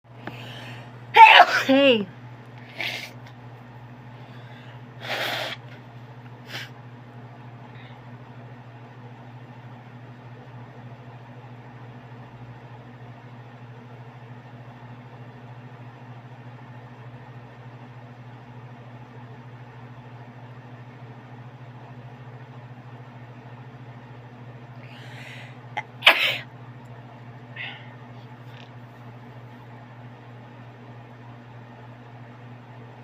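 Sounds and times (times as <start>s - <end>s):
steady low hum: 0.1s - 33.0s.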